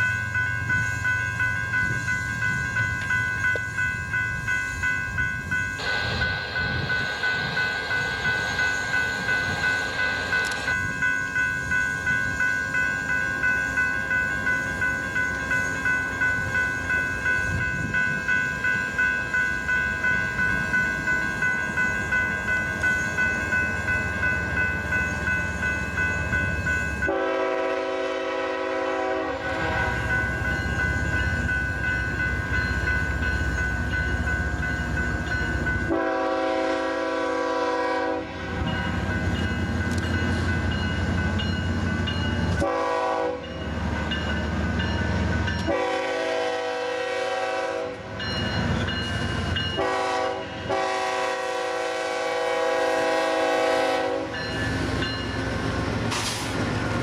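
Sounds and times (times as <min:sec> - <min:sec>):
railroad crossing bell ringing: 0:00.0 - 0:57.0
train rumble: 0:00.0 - 0:57.0
locomotive air horn: 0:27.0 - 0:30.1, 0:35.9 - 0:38.7, 0:42.6 - 0:43.4, 0:45.6 - 0:48.0, 0:49.8 - 0:54.4.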